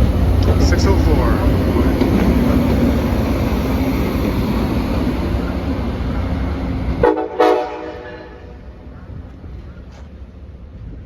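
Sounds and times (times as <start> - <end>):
train rumbling: 0.0 - 11.0.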